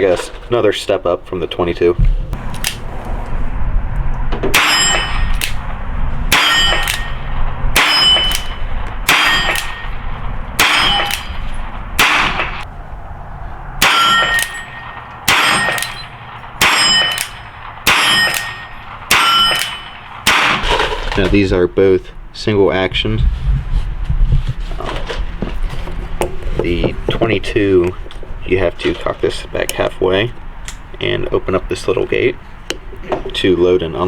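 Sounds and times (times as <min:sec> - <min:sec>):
metallic ring of steel target: 0:04.4 - 0:05.7, 0:06.3 - 0:12.6, 0:13.8 - 0:21.0
revolver gunshots: 0:04.5 - 0:12.6, 0:13.8 - 0:21.2.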